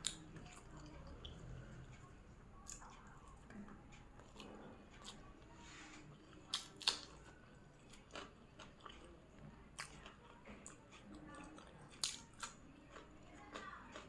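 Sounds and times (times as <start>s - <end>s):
person chewing: 4.2s - 5.3s, 6.1s - 14.0s.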